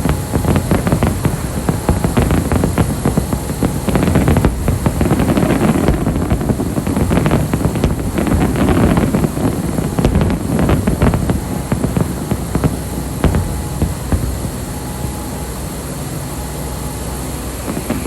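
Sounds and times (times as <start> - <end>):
low rumble: 0.0 - 15.7
fireworks crackling: 0.0 - 16.3, 17.0 - 18.0.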